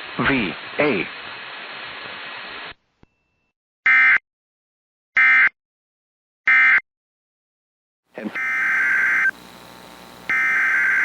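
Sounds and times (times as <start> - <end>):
radio hiss: 0.0 - 2.8, 8.2 - 11.0
digital data tone bursts: 8.2 - 9.4, 10.3 - 11.0.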